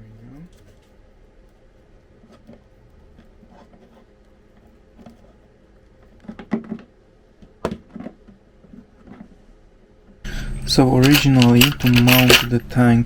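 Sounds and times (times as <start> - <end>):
parts tapping and knocking: 6.0 - 9.2, 10.8 - 12.8.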